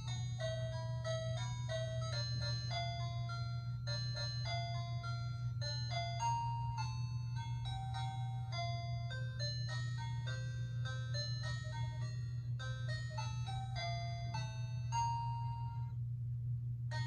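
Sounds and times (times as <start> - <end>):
electronic doorbell melody: 0.0 - 16.0
low hum: 0.0 - 17.0.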